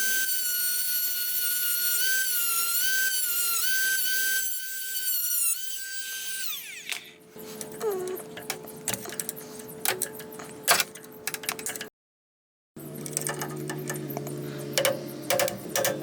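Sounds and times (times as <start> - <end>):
hand tools tapping on metal: 7.6 - 11.9, 13.0 - 16.0.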